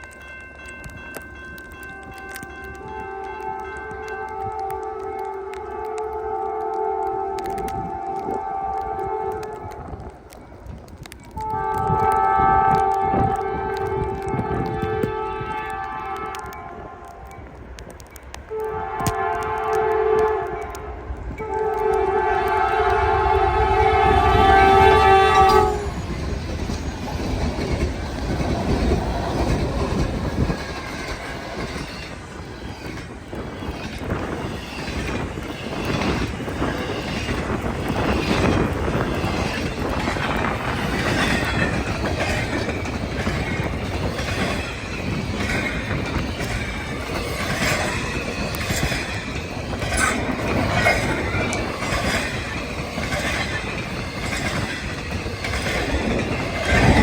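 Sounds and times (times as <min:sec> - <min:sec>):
wheels clicking over rail joints: 0:00.0 - 0:57.0
locomotive rumble: 0:00.8 - 0:57.0
wheel squeal: 0:24.9 - 0:39.8, 0:40.7 - 0:57.0.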